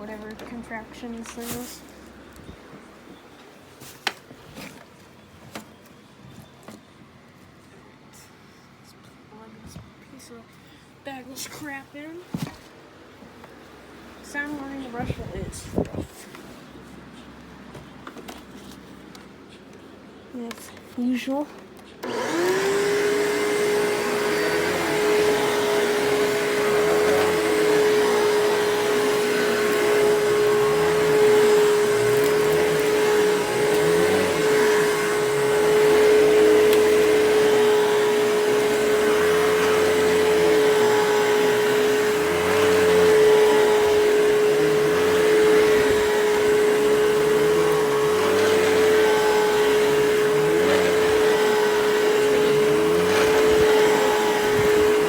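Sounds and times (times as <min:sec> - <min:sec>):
vacuum cleaner running: 0:22.0 - 0:55.0.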